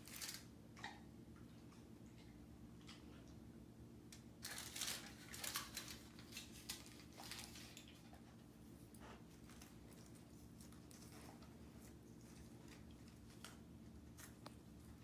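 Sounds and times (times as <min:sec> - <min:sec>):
aluminium foil crinkling: 0:00.0 - 0:00.5, 0:04.4 - 0:08.2.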